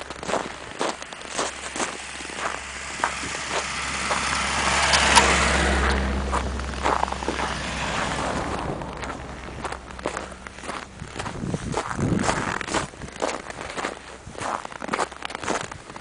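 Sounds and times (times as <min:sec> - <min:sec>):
footsteps crunching in snow: 0:00.0 - 0:16.0
car passing by: 0:00.9 - 0:11.3.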